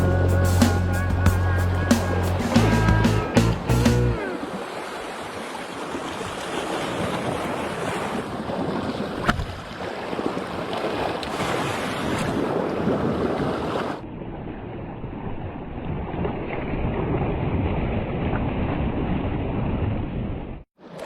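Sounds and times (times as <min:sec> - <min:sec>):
surf washing on shore: 0:04.2 - 0:14.1.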